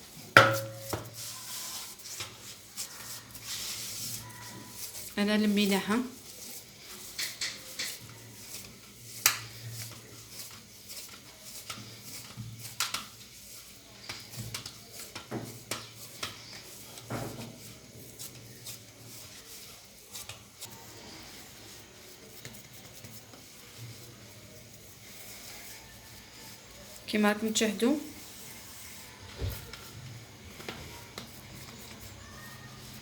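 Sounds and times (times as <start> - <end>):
hands kneading dough: 0.0 - 33.0
knocks against bowl: 0.4 - 1.1.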